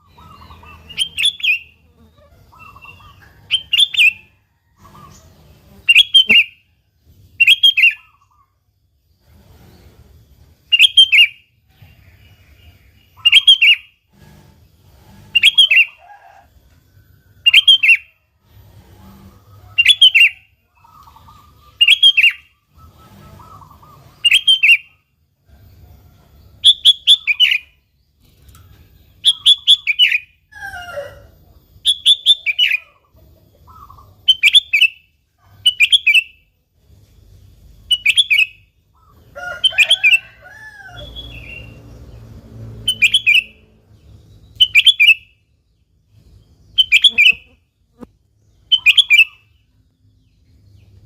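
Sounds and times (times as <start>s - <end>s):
bulbul calling: 0.0s - 5.2s, 13.2s - 13.9s, 46.7s - 48.1s, 48.7s - 49.6s.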